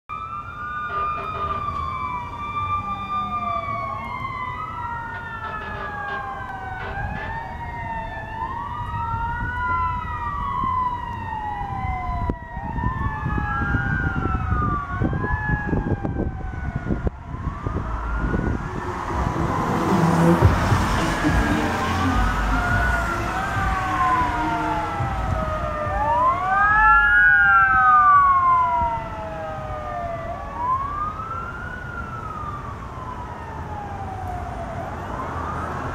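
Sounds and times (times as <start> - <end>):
electronic siren wailing: 0.1 - 35.9
mechanical siren winding down: 0.1 - 35.9
rushing noise: 17.3 - 26.5.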